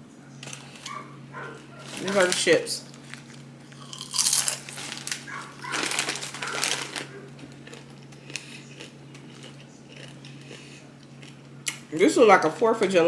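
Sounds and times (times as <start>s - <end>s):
dog barking: 0.9s - 2.0s, 5.2s - 7.3s.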